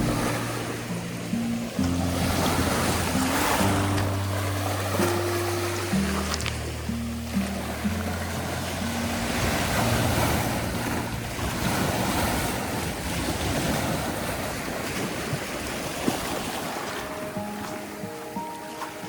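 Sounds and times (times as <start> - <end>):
held low notes: 0.0 - 13.2
ocean surf washing in: 0.0 - 19.0.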